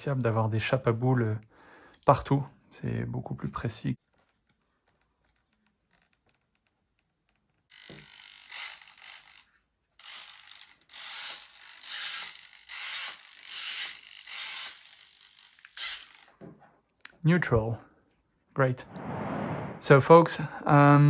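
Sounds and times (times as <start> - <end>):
mechanical ratcheting and grinding: 7.7 - 16.4.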